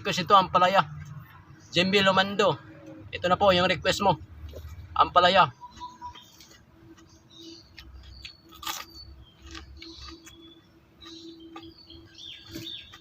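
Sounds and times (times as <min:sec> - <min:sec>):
birds chirping: 0:00.0 - 0:13.0
crisp crunches of chewing: 0:07.7 - 0:11.7.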